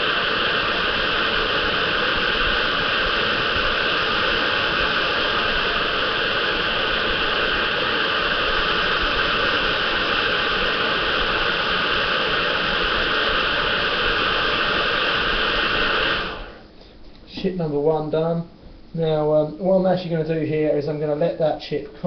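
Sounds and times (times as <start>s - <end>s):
hot air gun blowing: 0.0s - 16.7s.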